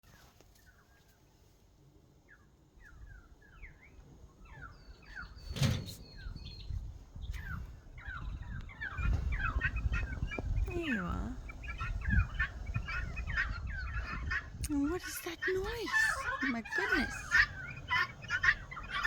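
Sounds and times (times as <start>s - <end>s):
bird chirping: 2.2s - 19.0s.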